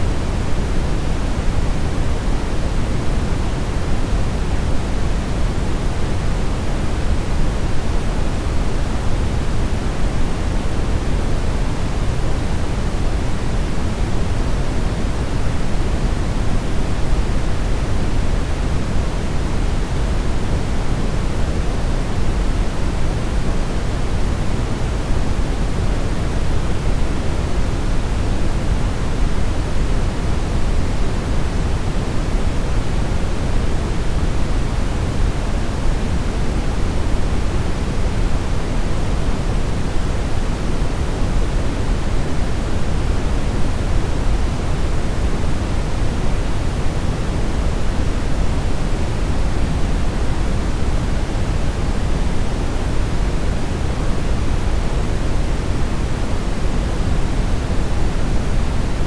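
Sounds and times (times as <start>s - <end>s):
brown noise rumbling hiss: 0.0s - 59.0s.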